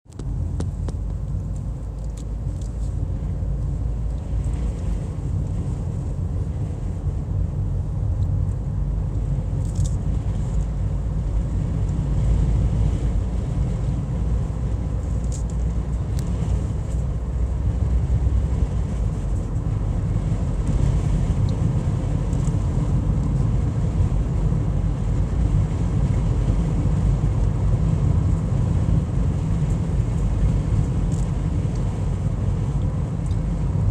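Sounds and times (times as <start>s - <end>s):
car driving rumble: 0.0s - 33.9s.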